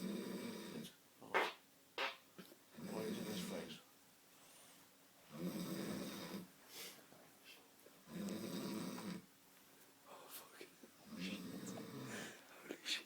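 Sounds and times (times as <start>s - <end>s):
man snoring: 0.0s - 0.9s, 5.3s - 6.5s, 8.1s - 9.3s, 11.1s - 12.3s
quiet breathing: 2.7s - 13.0s.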